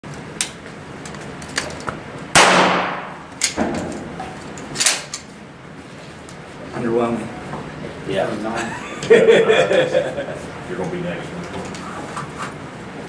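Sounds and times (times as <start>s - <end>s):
handgun shot echoing: 2.4s - 3.7s.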